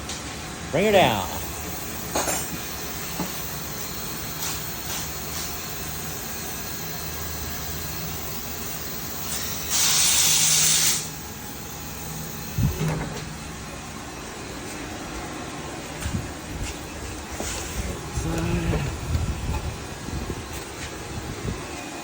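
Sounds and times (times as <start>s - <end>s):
workshop background: 0.0s - 22.0s
air hissing out: 8.2s - 13.0s.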